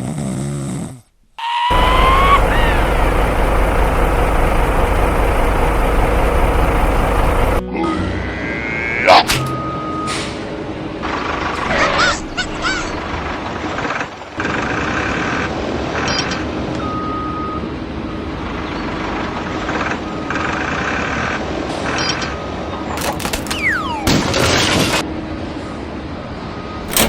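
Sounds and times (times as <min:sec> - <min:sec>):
falling whistle: 0:01.4 - 0:03.2
loud burst of noise: 0:01.7 - 0:07.6
machinery running: 0:01.7 - 0:07.6.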